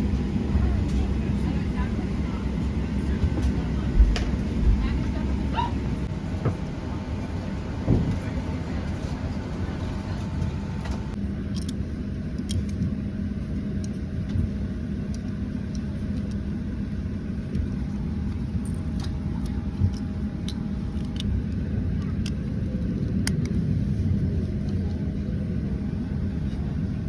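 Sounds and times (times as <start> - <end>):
airliner mechanical hum: 0.0 - 27.0.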